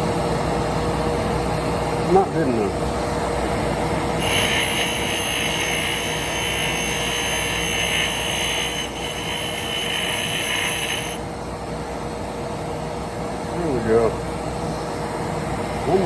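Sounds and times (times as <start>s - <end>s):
shop fans and dust collector drone: 0.0s - 16.0s
high grinding hiss: 4.2s - 11.3s.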